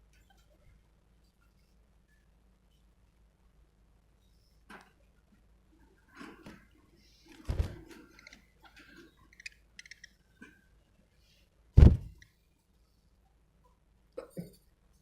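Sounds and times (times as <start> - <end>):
heavy thumps: 11.8 - 12.2.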